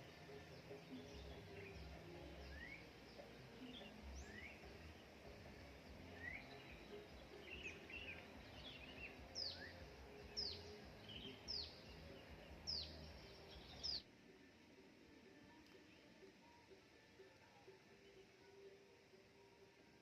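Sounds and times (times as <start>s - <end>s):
soft bird chirps: 0.0s - 14.1s
birds whistling: 0.9s - 3.0s, 6.1s - 14.0s.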